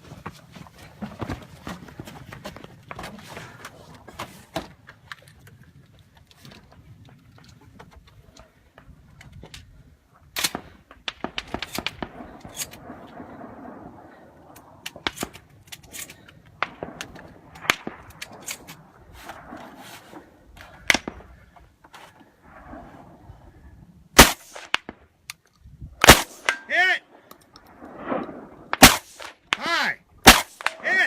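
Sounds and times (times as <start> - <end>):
shotgun shots: 24.2 - 25.0, 26.0 - 26.8, 28.0 - 29.6, 30.2 - 31.0.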